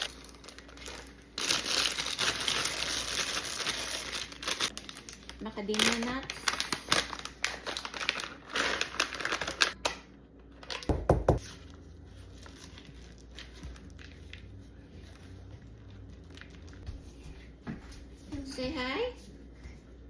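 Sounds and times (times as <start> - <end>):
bag crinkling: 0.0 - 9.8.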